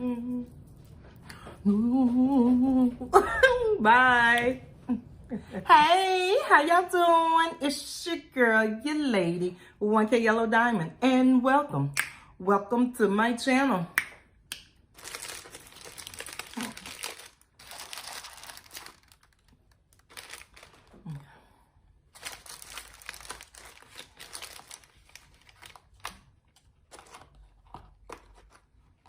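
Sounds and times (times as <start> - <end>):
wrapping crinkling and rustling: 14.9 - 21.4, 22.1 - 29.0.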